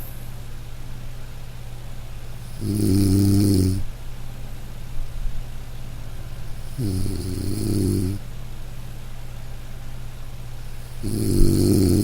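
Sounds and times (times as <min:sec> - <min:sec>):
steady low hum: 0:00.0 - 0:12.0
person snoring loudly: 0:02.5 - 0:03.8, 0:06.6 - 0:08.2, 0:10.9 - 0:12.0.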